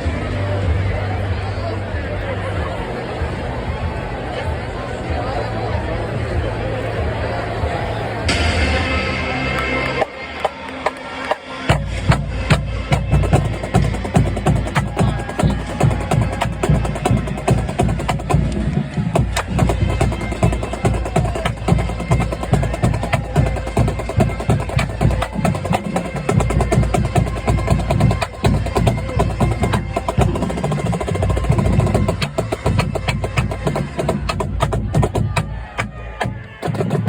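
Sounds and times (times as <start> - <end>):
snare drum strokes: 8.3 - 37.0.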